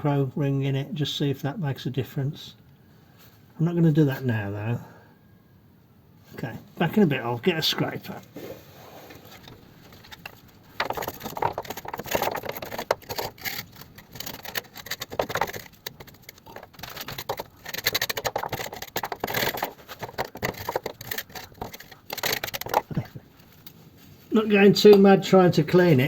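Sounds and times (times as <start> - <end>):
hand scraper scraping grime: 8.4 - 23.3.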